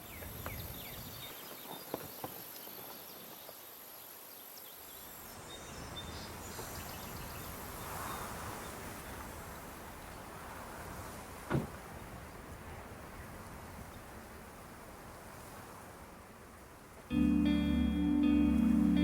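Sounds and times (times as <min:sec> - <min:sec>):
high-pitched hum: 0:17.1 - 0:19.0.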